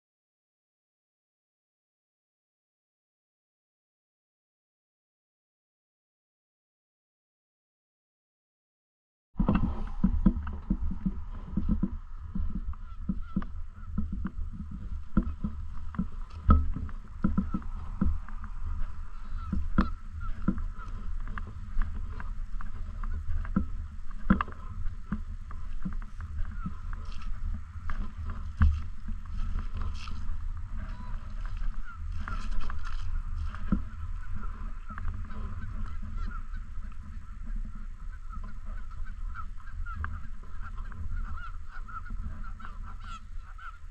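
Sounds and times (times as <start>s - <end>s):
geese honking: 9.4s - 43.9s
steady low rumble: 9.4s - 43.9s.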